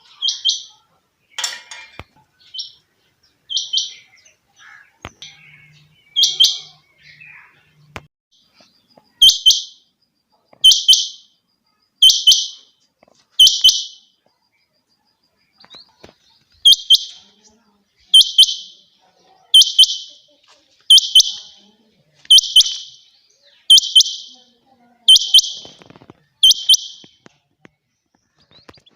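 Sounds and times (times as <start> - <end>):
quail calling: 3.5 - 7.6.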